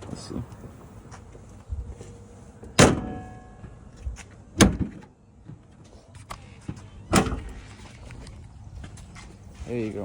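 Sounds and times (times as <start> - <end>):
car hood shutting thud: 2.7 - 3.2.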